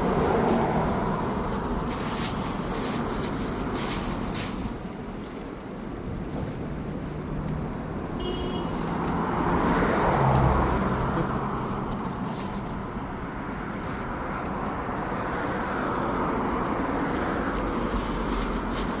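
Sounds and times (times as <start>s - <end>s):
road traffic noise: 0.0s - 19.0s
vehicle passing close: 8.8s - 19.0s.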